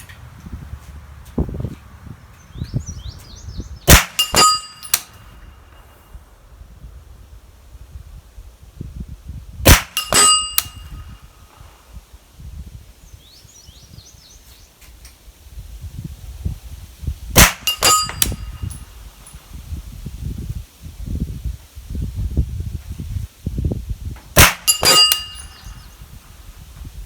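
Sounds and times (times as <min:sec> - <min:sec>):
suppressed gunshots: 0:03.9 - 0:05.0, 0:09.7 - 0:10.8, 0:17.4 - 0:18.2, 0:24.4 - 0:25.6
bullet striking steel gong: 0:03.9 - 0:05.4, 0:09.7 - 0:11.1, 0:17.4 - 0:18.9, 0:24.4 - 0:25.9.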